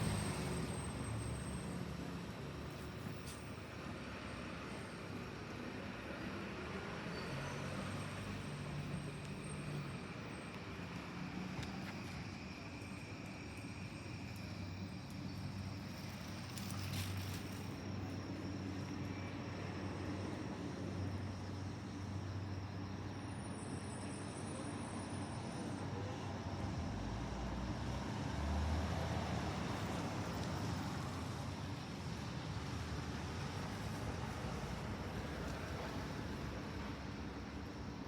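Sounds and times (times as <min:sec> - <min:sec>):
insects chirping: 0:06.8 - 0:24.4.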